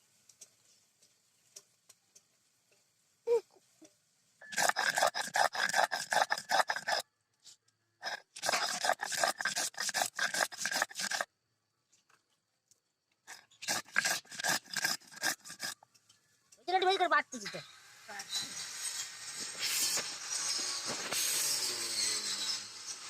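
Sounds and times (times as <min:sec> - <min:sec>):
rapid scraping strokes: 0:04.4 - 0:07.0, 0:08.0 - 0:11.3, 0:13.3 - 0:15.8, 0:18.1 - 0:23.0.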